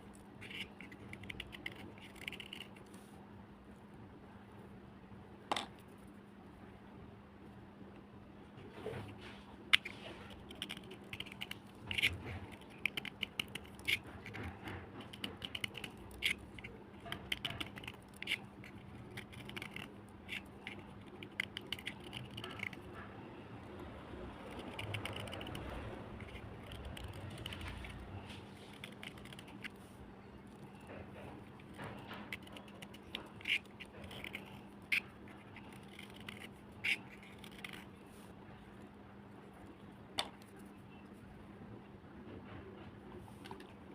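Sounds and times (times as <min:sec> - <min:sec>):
crunching and chewing: 0:00.0 - 0:02.9, 0:09.8 - 0:37.9.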